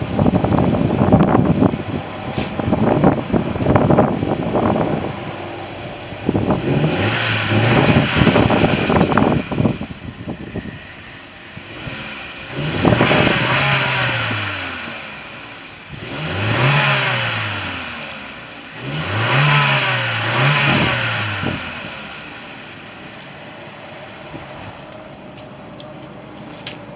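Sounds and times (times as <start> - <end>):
rattling: 0.0 - 16.7
car engine revving: 0.0 - 25.4.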